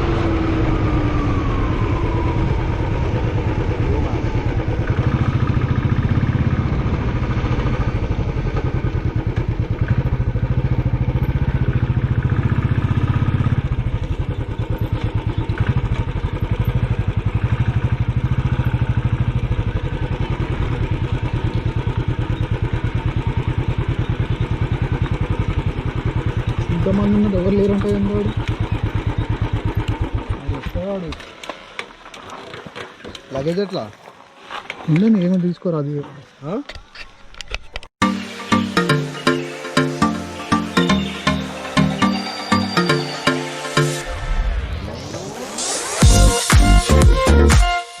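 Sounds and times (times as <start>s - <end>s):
motorcycle engine running: 0.0s - 32.1s.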